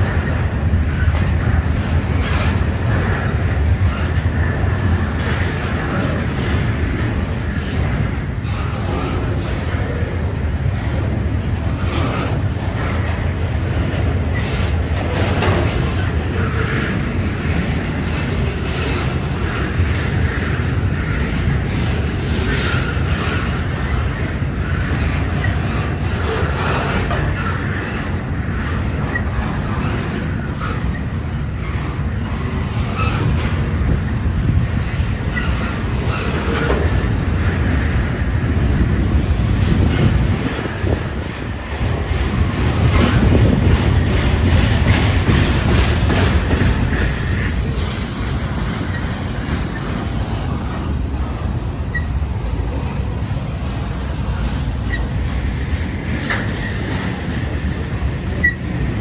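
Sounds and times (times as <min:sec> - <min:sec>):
freight train rumbling past: 0:00.0 - 0:59.0
wheels clicking on rail: 0:00.0 - 0:59.0
faint wheel squeaks: 0:54.2 - 0:59.0.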